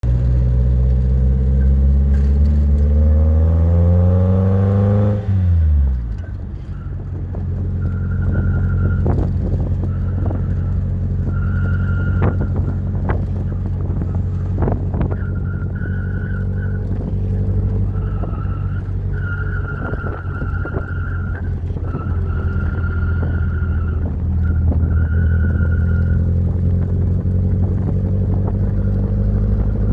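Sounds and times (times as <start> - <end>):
car engine revving: 0.0 - 29.9
high-pitched squeal: 6.1 - 29.9.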